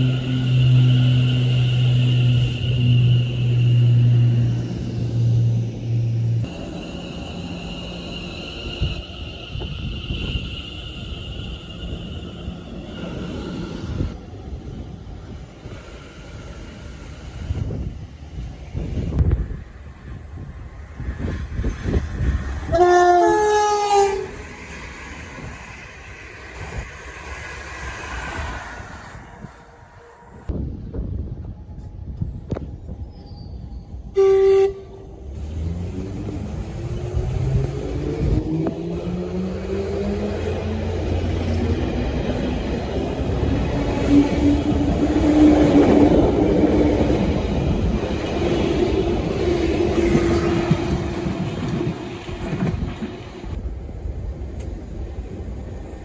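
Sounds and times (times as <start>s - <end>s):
train horn: 0.0s - 4.5s, 22.7s - 24.4s, 34.1s - 35.6s
train wheels rumbling on track: 0.0s - 56.0s.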